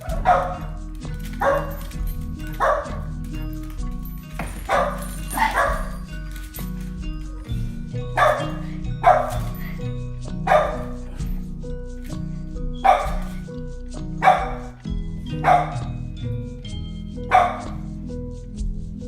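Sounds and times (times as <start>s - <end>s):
dog barking: 0.0s - 3.6s, 4.7s - 6.3s, 8.1s - 11.3s, 12.8s - 13.6s, 14.2s - 16.0s, 17.2s - 17.9s
background music: 0.0s - 19.0s.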